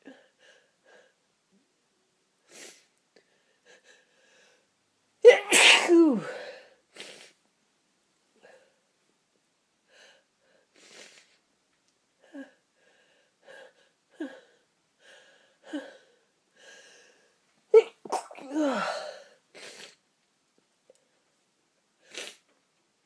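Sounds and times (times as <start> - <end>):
person breathing: 3.2 - 4.7, 12.3 - 17.4, 18.6 - 19.8
person sneezing: 5.2 - 7.3, 17.7 - 19.9.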